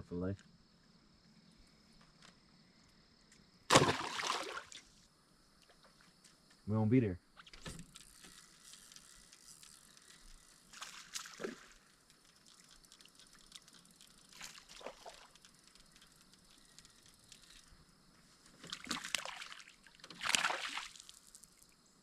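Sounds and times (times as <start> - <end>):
water sloshing and splashing: 3.7 - 5.0, 8.0 - 17.7, 18.4 - 21.6.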